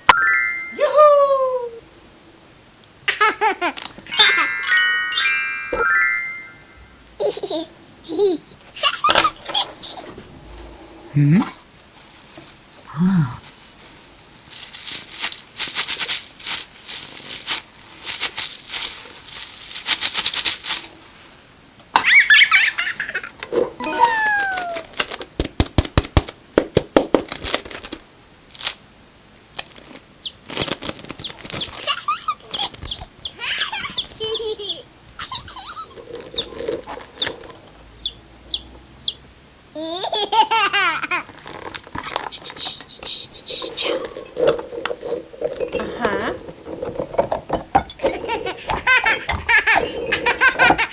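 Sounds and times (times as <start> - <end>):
short high chirps: 0.0 - 1.0, 4.1 - 7.0
rattle shaken: 14.5 - 21.0, 41.3 - 45.8
wavering laugh-like giggle: 33.4 - 36.0, 48.0 - 50.9.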